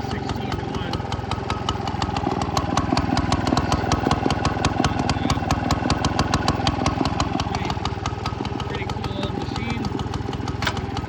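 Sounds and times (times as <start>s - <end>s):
small engine popping exhaust: 0.0s - 11.0s.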